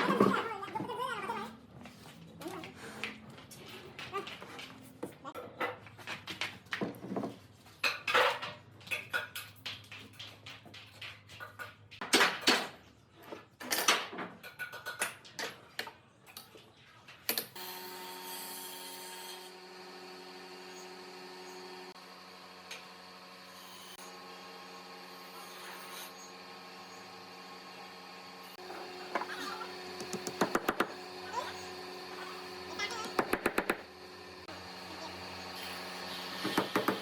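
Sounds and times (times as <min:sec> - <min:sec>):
wood and tools clattering: 0:01.8 - 0:17.5
steady hum with held tones: 0:19.5 - 0:37.0.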